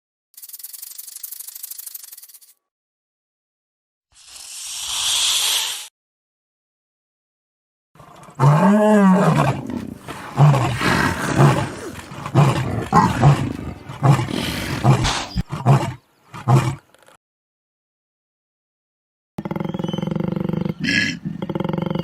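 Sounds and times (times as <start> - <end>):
big cat roaring: 8.0 - 16.8.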